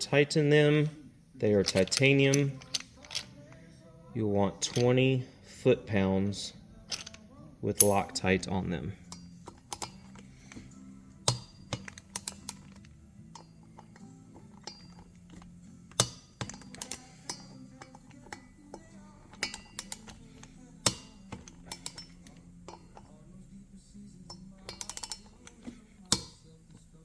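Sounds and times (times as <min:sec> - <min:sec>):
torque wrench ratcheting clicks: 0:06.9 - 0:07.2, 0:11.2 - 0:22.9, 0:24.3 - 0:26.9
sharp wrench clicks: 0:11.2 - 0:23.1, 0:24.3 - 0:26.9.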